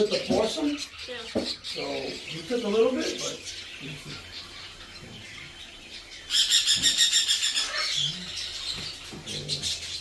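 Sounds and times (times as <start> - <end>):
parrot chattering call: 6.3 - 8.5.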